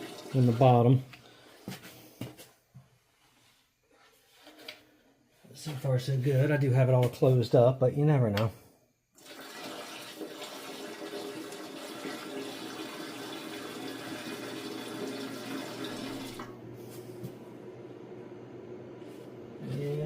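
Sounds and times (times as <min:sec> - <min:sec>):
liquid pouring into a tank: 0:00.0 - 0:01.1, 0:09.1 - 0:16.5.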